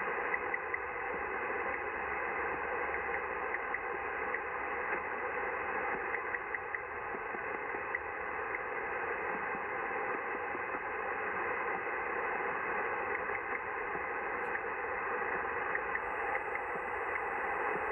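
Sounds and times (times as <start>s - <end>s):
faint irregular ticks and clicks: 0.0s - 17.9s
radio static hiss: 7.0s - 17.9s.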